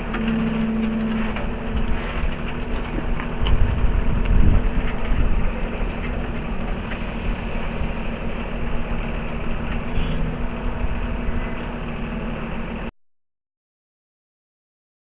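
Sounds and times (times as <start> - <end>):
tractor diesel engine running: 0.0 - 12.9
high-pitched whine: 5.9 - 12.9.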